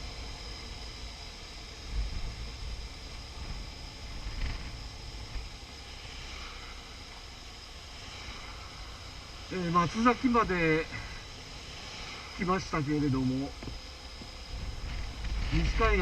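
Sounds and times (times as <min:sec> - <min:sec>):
motorcycle engine running: 0:00.0 - 0:16.0
wind buffeting microphone: 0:01.8 - 0:05.7, 0:13.6 - 0:16.0.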